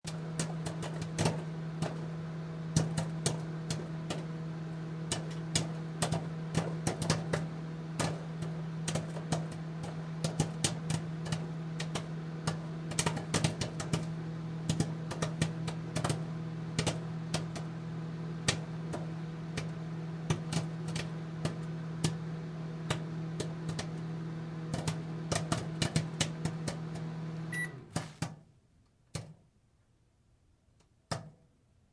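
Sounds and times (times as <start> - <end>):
popcorn kernels popping: 0.1 - 28.5
appliance hum: 0.1 - 28.8
short high beep: 27.5 - 27.8.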